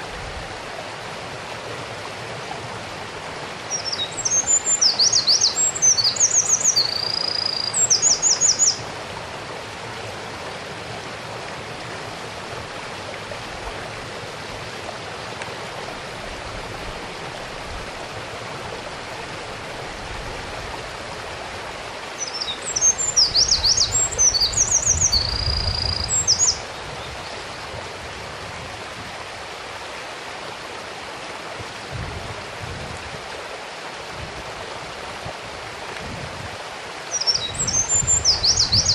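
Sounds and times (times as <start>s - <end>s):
mountain stream rushing: 0.0s - 38.9s
wren singing high trills: 3.7s - 8.8s, 22.2s - 26.6s, 37.1s - 38.9s.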